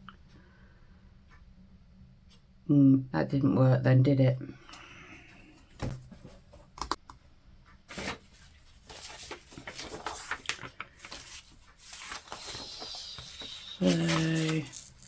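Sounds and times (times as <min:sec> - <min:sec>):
rustling: 0:07.9 - 0:15.0.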